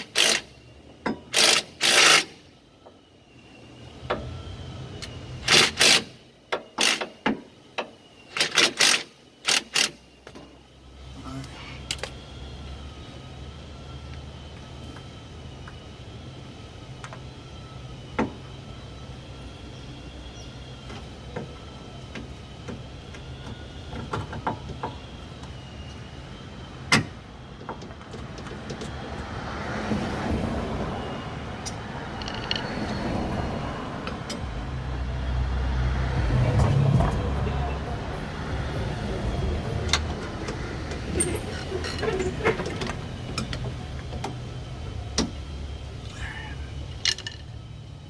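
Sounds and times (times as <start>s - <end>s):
faint wavering whine: 2.4s - 5.5s, 9.1s - 28.1s
sharp clicks and knocks: 40.9s - 44.4s.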